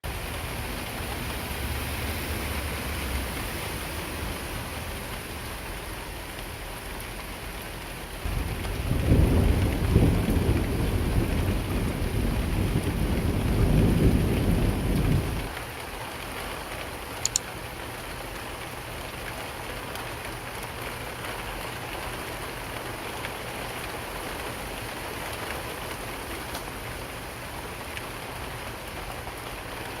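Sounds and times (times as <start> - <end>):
steady rainfall: 0.0 - 30.0
low thunder rumble: 8.3 - 15.5
sharp ticks: 17.2 - 17.5.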